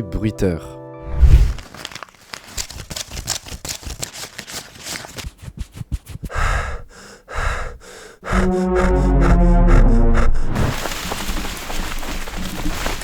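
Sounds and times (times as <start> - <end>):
breathy gasps: 6.2 - 11.6
music with held low notes: 8.3 - 10.5.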